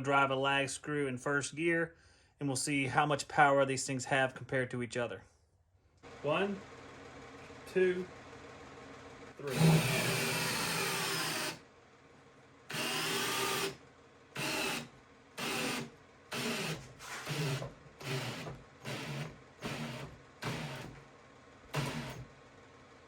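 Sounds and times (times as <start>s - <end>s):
drill driving a screw: 9.4s - 11.6s, 12.7s - 13.8s, 14.4s - 21.0s, 21.7s - 22.3s.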